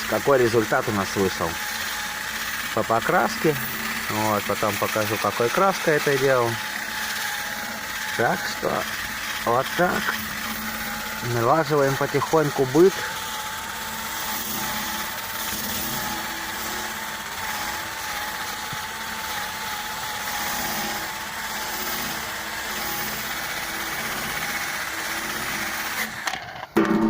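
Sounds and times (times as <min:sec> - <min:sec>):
engine-like hum: 0:00.0 - 0:19.9.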